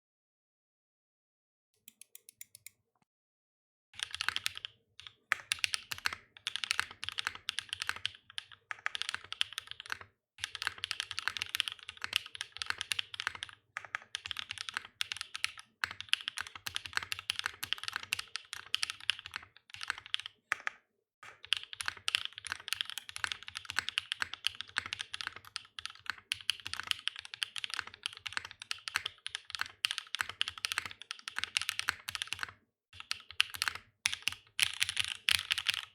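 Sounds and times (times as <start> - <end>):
fast mechanical keyboard typing: 4.0 - 20.7, 21.3 - 35.9.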